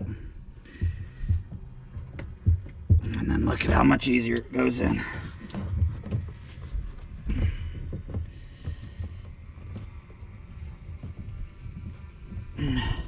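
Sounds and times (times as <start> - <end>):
soft knocks and small clicks: 0.8 - 4.5.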